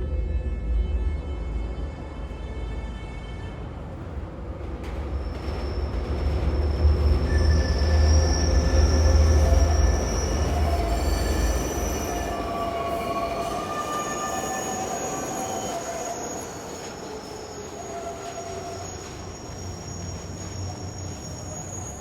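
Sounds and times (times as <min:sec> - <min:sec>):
subway train rumble: 0:00.0 - 0:22.0
metal wheel squeal: 0:05.3 - 0:22.0.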